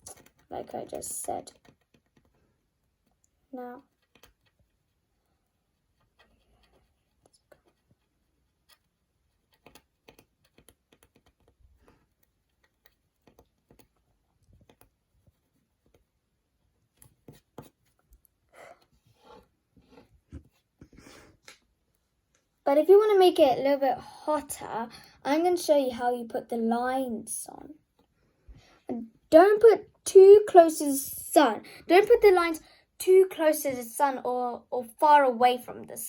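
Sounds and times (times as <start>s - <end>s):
stylus scratching paper: 3.8s - 14.0s, 14.6s - 18.0s.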